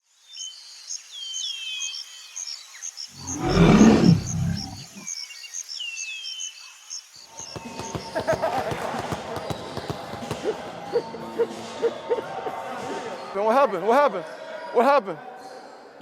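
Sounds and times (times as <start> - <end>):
birds whistling: 3.2 - 4.9
big cat roaring: 3.2 - 5.0.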